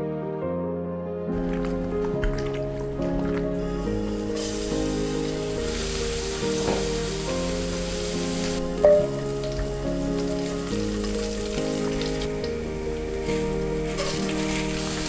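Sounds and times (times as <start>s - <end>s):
background music: 0.0s - 15.0s
food sizzling in hot oil: 3.7s - 15.0s.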